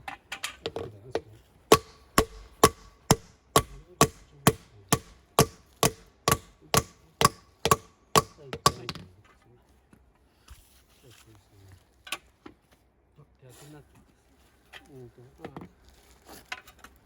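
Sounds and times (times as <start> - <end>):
mallet striking granite: 1.7 - 9.0.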